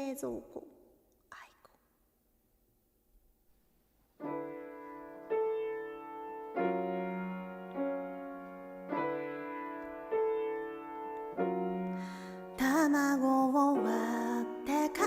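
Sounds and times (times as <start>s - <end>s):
piano chords: 4.1s - 15.0s.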